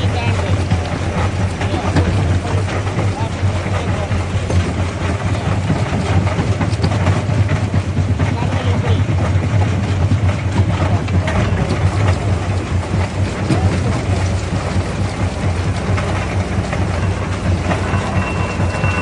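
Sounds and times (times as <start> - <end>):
jaw crusher rumbling: 0.0 - 19.0.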